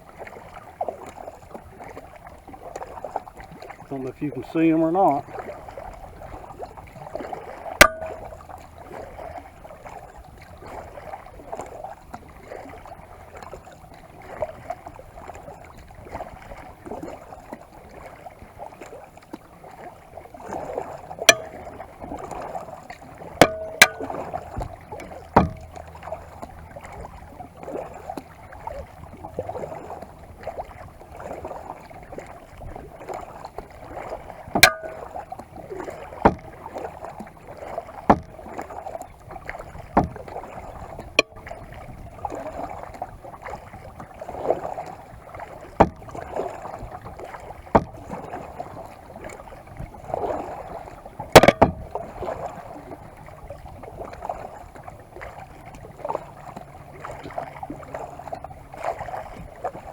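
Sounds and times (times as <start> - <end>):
paddle splashing in water: 0.0 - 59.9
sharp knocks: 7.8 - 8.4, 21.3 - 21.7, 23.4 - 24.3, 25.4 - 25.7, 34.6 - 35.2, 36.3 - 36.6, 38.1 - 38.4, 51.4 - 51.9.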